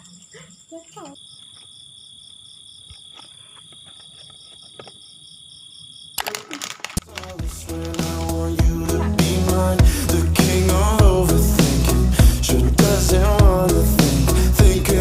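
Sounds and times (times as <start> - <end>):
pulsing insect chirp: 0.0 - 6.6
insects trilling: 0.0 - 6.9
music with heavy bass: 7.4 - 15.0.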